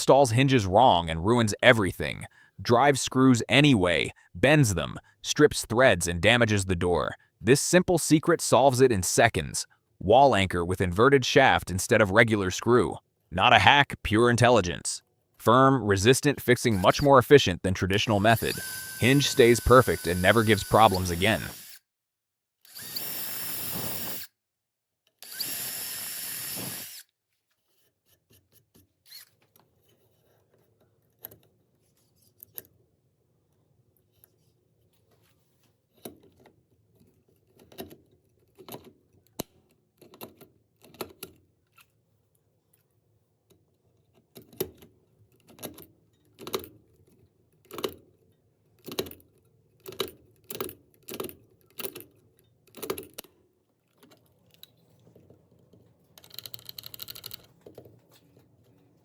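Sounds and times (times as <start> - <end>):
power drill running: 18.3 - 21.8, 22.7 - 24.3, 25.2 - 27.0.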